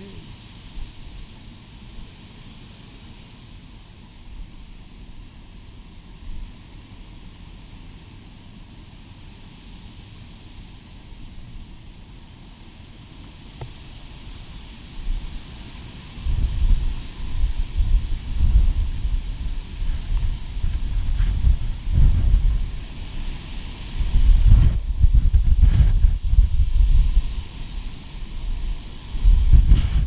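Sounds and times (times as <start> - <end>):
wind buffeting microphone: 13.0 - 30.0.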